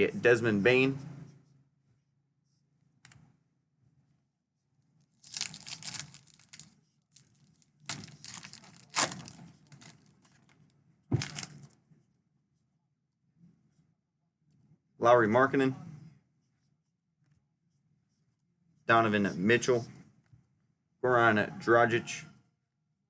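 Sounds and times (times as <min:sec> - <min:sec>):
wrapper tearing and crinkling: 0:05.2 - 0:10.1, 0:11.2 - 0:11.7.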